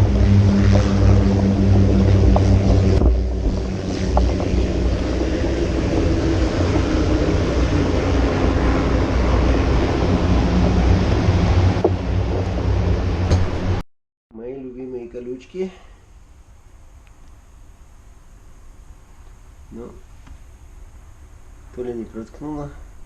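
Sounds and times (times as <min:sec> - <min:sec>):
off-road vehicle engine running: 0:00.0 - 0:13.8
wind noise on microphone: 0:00.0 - 0:13.8.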